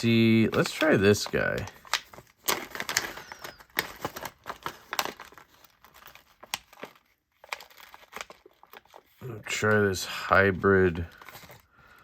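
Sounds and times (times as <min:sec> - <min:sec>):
packaging crinkling: 0:00.0 - 0:12.0.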